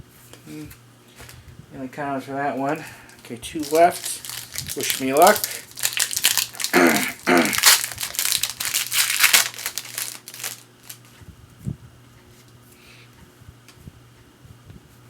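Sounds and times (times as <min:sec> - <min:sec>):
wrapper tearing and crinkling: 0:02.6 - 0:11.1.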